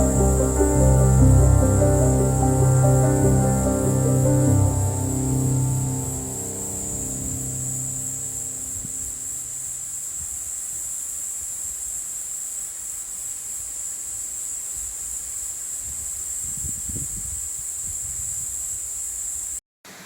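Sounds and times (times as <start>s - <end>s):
low rumbles: 0.0s - 9.9s
high-pitched insect chorus: 0.0s - 19.6s.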